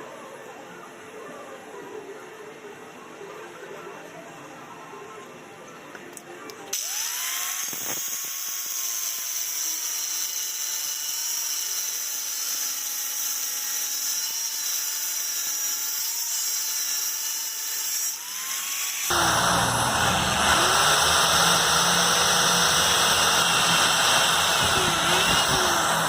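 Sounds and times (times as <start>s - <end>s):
power tool motor whine: 6.8s - 12.0s, 18.1s - 26.0s.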